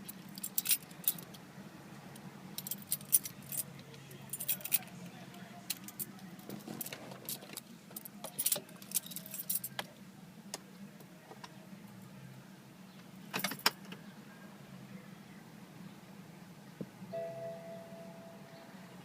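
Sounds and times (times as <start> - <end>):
metallic clicks and jingles: 0.0 - 1.4, 2.6 - 5.0, 5.7 - 9.8.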